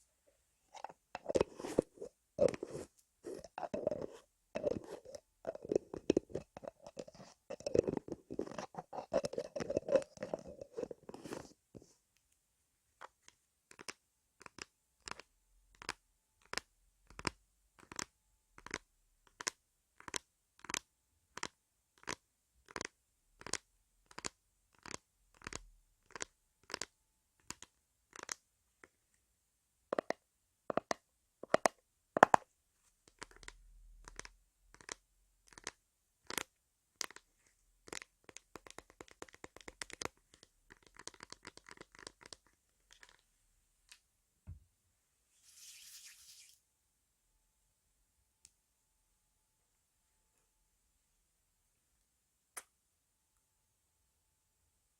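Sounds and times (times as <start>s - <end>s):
hands rubbing a microphone: 1.2s - 12.0s, 45.4s - 46.6s.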